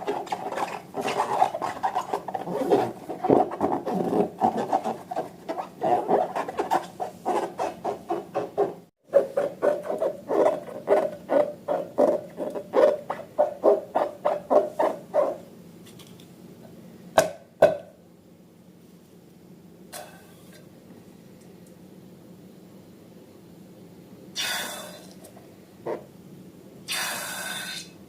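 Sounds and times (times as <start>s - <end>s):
slime squelching by hand: 0.0s - 14.1s.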